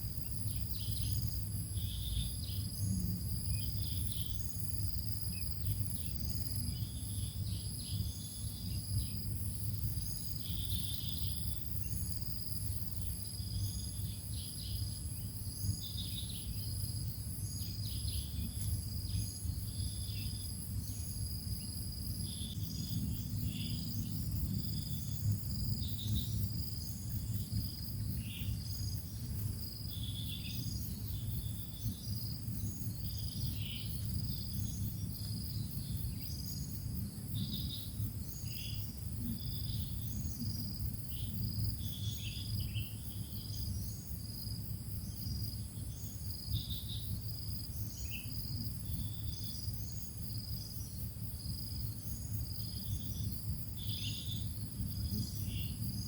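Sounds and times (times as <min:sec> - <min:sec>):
constant low hum: 0:00.0 - 0:56.0.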